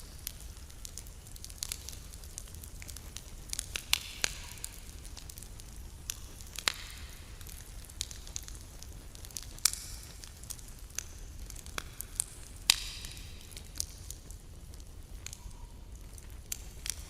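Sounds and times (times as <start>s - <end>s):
campfire crackling: 0.0s - 17.0s
faint hiss: 0.0s - 17.0s.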